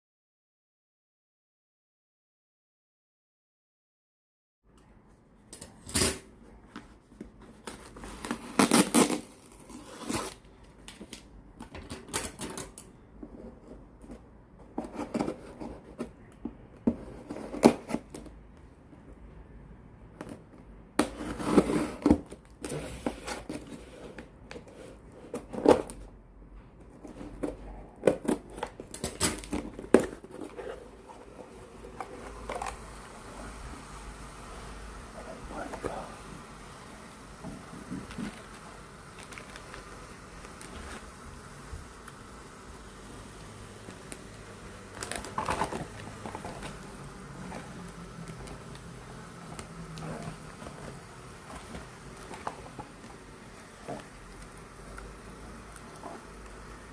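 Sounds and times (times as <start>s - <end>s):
cardboard tearing and scraping: 7.6s - 10.4s, 21.0s - 26.0s, 27.0s - 32.9s, 44.9s - 54.7s.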